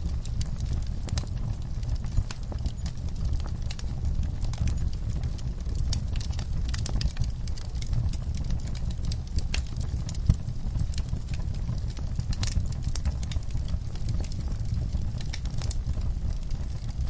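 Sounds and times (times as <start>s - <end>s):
low steady rumble: 0.0s - 17.0s
wood fire crackling: 0.0s - 17.0s.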